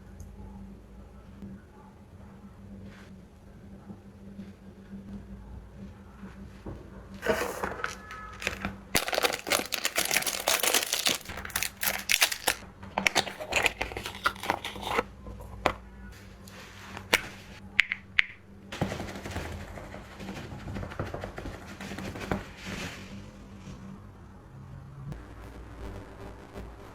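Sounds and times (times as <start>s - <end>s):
packaging crinkling and tearing: 7.2s - 15.7s
packaging rustling: 7.2s - 15.8s
faint steady hum: 23.4s - 26.9s.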